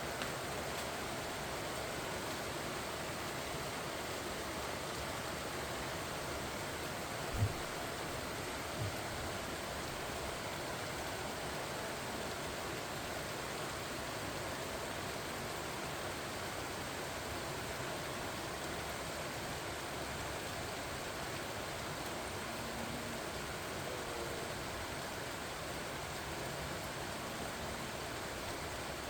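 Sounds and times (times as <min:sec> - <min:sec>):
rain falling on leaves: 0:00.0 - 0:29.0
faint low thump: 0:07.3 - 0:09.4.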